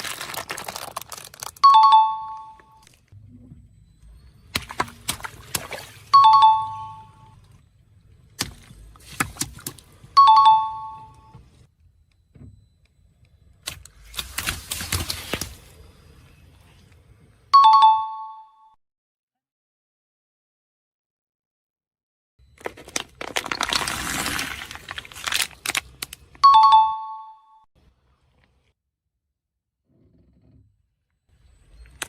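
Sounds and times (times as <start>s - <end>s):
objects crushed under car tyre: 0.0s - 1.6s, 22.6s - 26.1s.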